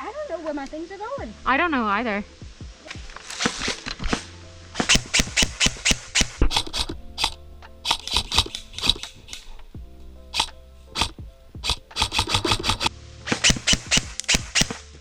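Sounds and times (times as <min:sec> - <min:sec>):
held tones: 0:03.0 - 0:14.8.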